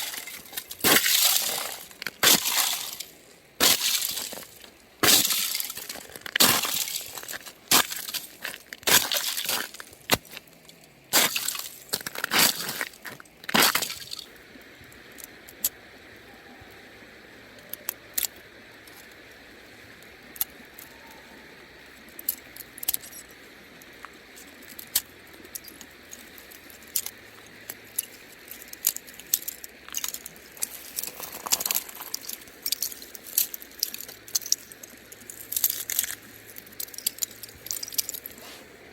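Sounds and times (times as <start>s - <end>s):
ice cracking underfoot: 0.0s - 14.2s, 28.4s - 38.6s
faint ice clicks: 0.0s - 15.8s, 21.9s - 38.7s.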